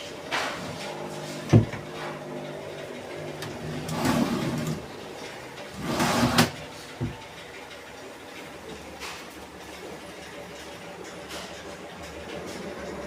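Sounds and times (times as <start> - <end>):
wooden drawers sliding: 0.4 - 2.2, 3.4 - 4.8, 5.7 - 7.2.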